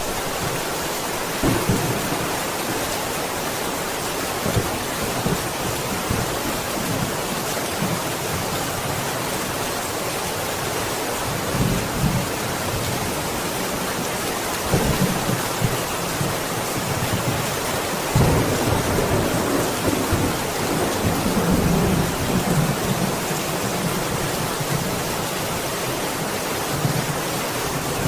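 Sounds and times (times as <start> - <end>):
heavy rain: 0.0 - 28.0
thunder rolling: 1.4 - 3.1, 18.1 - 23.1.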